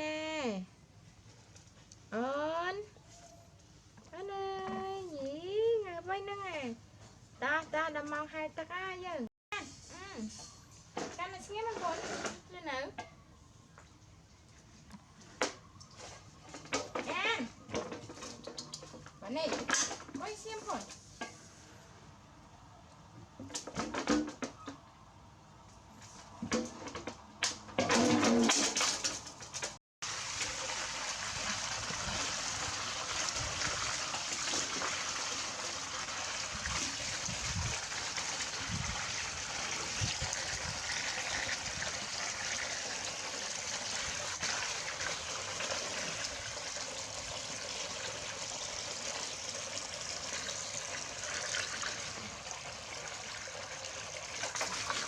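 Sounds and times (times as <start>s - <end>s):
stream water running: 27.9s - 55.0s.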